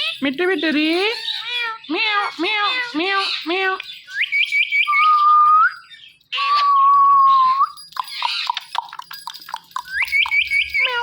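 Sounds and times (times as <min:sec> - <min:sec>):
parrot chirps and squawks: 0:01.0 - 0:11.0
parrot whistle: 0:04.1 - 0:08.6, 0:09.8 - 0:11.0.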